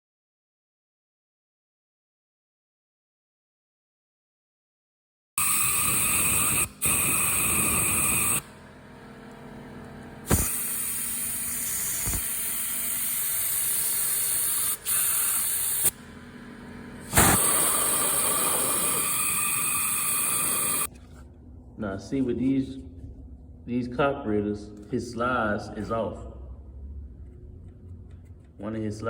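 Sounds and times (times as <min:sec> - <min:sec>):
pressurized spray hissing: 0:05.4 - 0:08.4, 0:10.3 - 0:15.9, 0:17.0 - 0:20.9.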